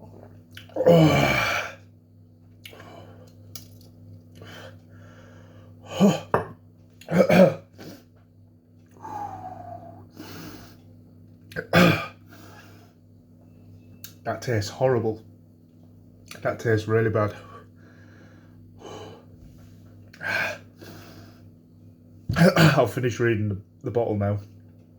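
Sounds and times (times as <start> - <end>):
falling groan: 0.8 - 1.8
man clearing his throat: 5.9 - 6.5, 7.1 - 7.7, 11.6 - 12.2, 22.3 - 22.9
man coughing: 7.1 - 7.7, 11.6 - 12.2, 22.3 - 23.0.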